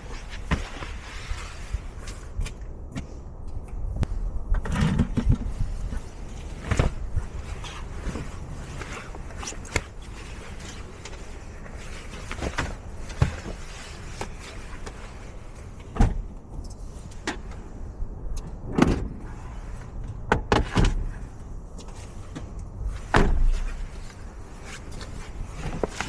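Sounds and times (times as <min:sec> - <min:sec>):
low steady rumble: 0:00.0 - 0:26.0
knocks and clunks: 0:18.4 - 0:21.1, 0:22.4 - 0:23.8.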